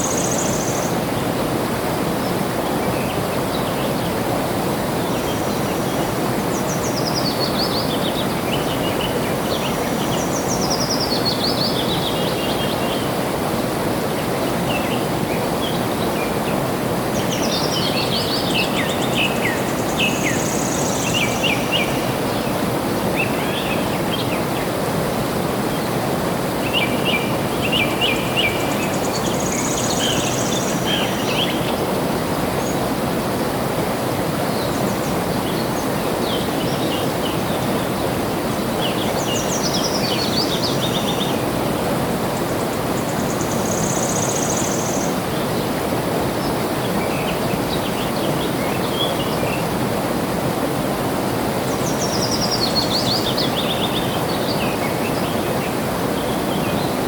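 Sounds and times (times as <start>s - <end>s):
flowing water rushing: 0.0s - 57.0s
birds singing: 26.6s - 33.0s, 34.5s - 49.8s, 51.6s - 57.0s.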